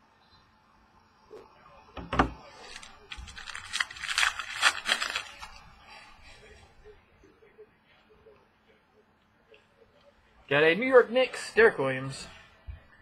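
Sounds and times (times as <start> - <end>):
cards being handled: 2.4 - 6.1
card pack wrapper tearing: 2.5 - 5.6.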